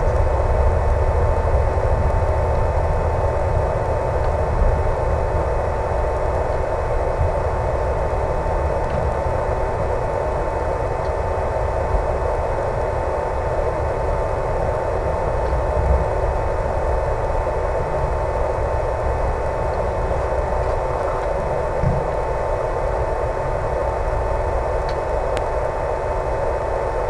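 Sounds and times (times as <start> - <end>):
low uneven rumbling: 13.6 - 25.5.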